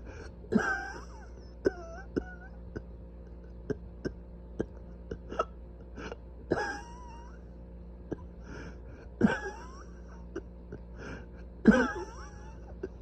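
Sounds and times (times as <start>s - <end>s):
breathy sounds: 0.0s - 0.4s, 3.4s - 6.2s, 8.1s - 9.2s, 10.8s - 11.6s
person coughing with wheezy whistle: 0.5s - 7.5s, 9.1s - 13.0s.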